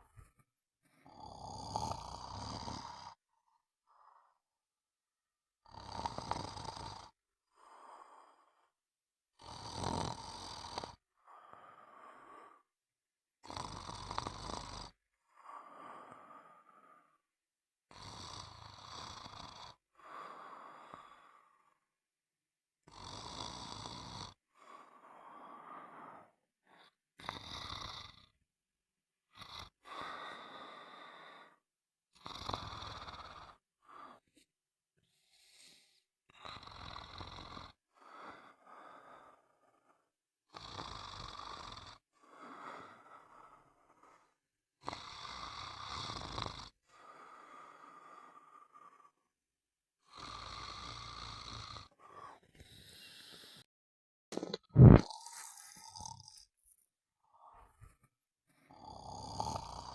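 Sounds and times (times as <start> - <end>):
person snoring: 1.0 - 3.2, 5.6 - 8.6, 9.3 - 12.7, 13.4 - 17.2, 17.9 - 21.8, 22.8 - 28.4, 32.2 - 34.3, 35.1 - 49.3, 50.0 - 53.7, 54.4 - 56.5, 58.7 - 59.9
soft breath: 33.8 - 36.1, 51.9 - 53.7.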